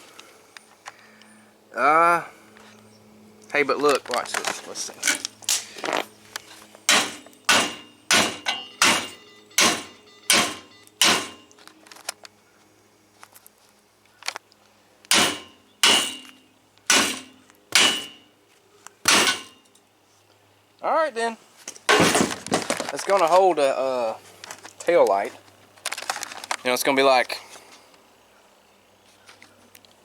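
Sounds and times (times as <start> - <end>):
hammer striking steel weld: 6.9 - 11.5, 15.1 - 18.3, 19.1 - 19.7.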